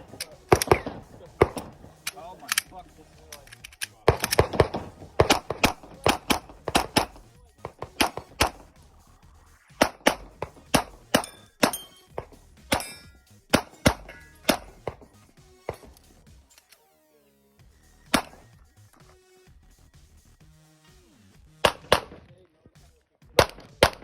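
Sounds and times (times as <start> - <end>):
bullets clanging on steel targets: 0.0 - 8.6, 9.8 - 15.1
rapid pistol shots: 0.0 - 8.8, 9.7 - 16.1, 18.1 - 18.5, 21.6 - 22.3, 23.4 - 24.0.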